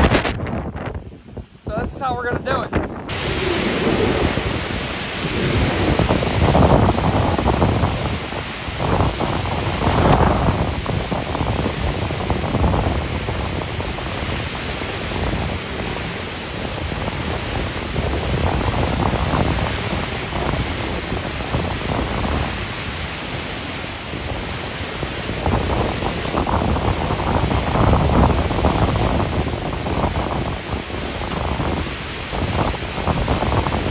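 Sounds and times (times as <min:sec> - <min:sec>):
hurricane wind and rain: 0:00.0 - 0:33.9.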